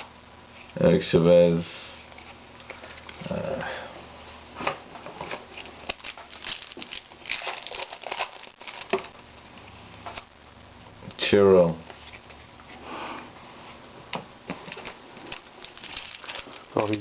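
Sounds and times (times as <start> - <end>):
cards clicking and rustling: 14.5 - 17.0.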